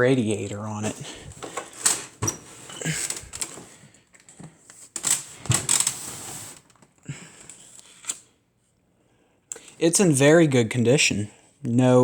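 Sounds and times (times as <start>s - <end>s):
handling noise clicks and rustles: 0.8s - 8.3s.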